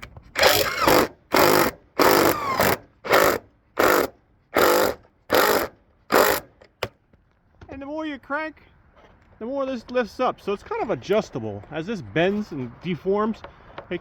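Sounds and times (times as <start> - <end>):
drill driving a screw: 0.4 - 6.6.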